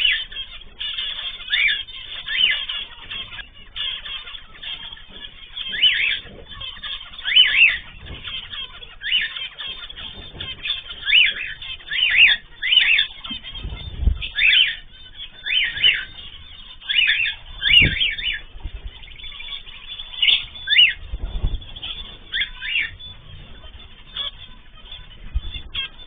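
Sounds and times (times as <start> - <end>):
cage birds chirping: 0.0 - 26.0
low thumps: 9.8 - 26.0.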